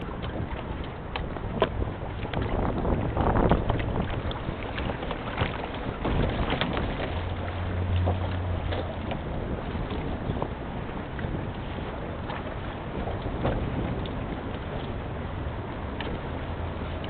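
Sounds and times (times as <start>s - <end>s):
low hum: 0.0s - 17.0s
wind blowing across microphone: 0.0s - 17.0s.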